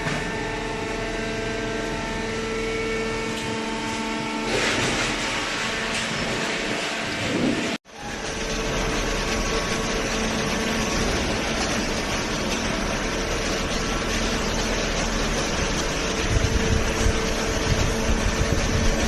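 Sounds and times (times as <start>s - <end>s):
motor and hydraulic pump humming: 0.0s - 19.0s.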